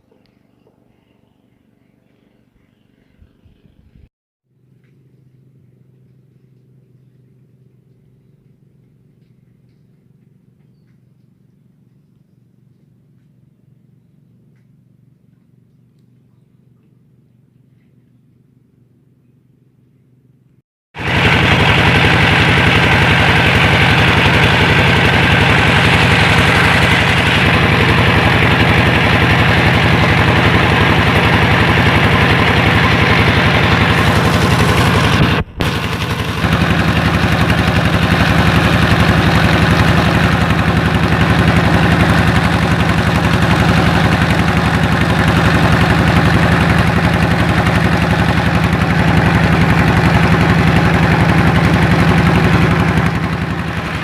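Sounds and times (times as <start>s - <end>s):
vehicle engine running: 21.0s - 54.0s.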